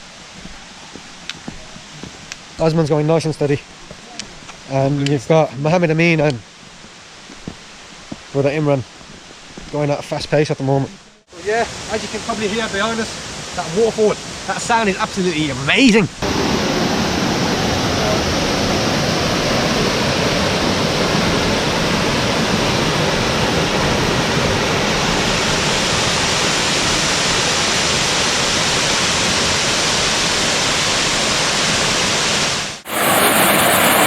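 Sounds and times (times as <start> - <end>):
waterfall roaring: 10.9 - 34.0.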